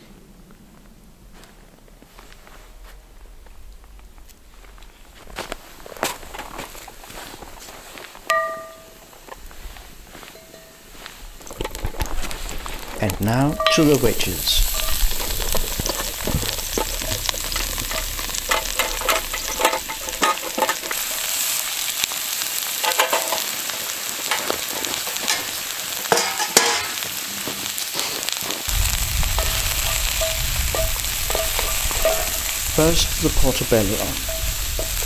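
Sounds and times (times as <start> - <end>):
food sizzling in a pan: 12.0 - 35.0
low rumble: 13.6 - 21.3, 28.7 - 35.0.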